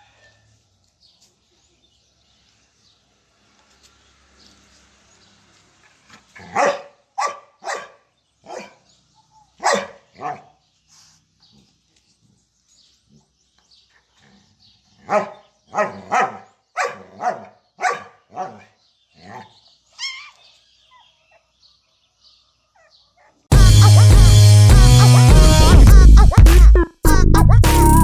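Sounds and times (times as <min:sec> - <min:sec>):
dog barking: 0:06.4 - 0:08.9, 0:09.6 - 0:10.6, 0:15.0 - 0:19.6, 0:22.8 - 0:23.5.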